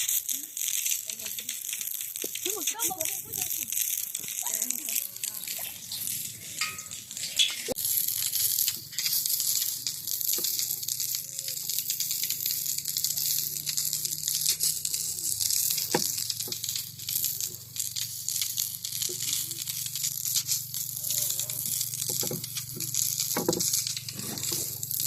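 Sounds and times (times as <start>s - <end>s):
dough sizzling in hot oil: 0.0s - 25.0s.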